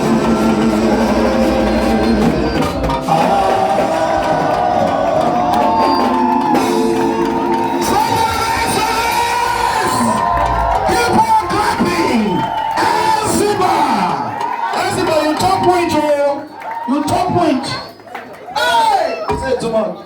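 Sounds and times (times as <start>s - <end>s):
people singing: 0.0s - 10.4s
congregation shouting: 0.0s - 15.7s
drums and instruments: 0.0s - 18.1s.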